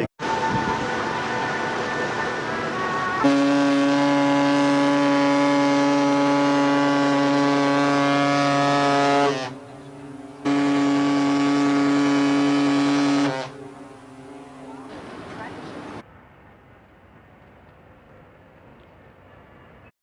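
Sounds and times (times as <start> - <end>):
ship's horn blast: 0.0 - 15.1.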